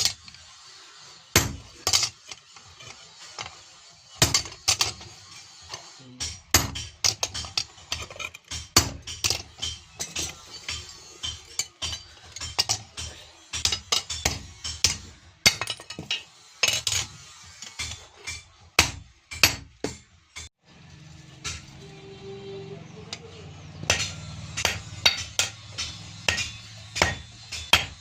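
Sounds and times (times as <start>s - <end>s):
hammer striking iron on anvil: 1.4s - 1.8s, 6.2s - 7.6s, 8.5s - 16.1s, 17.8s - 20.5s, 23.1s - 28.0s.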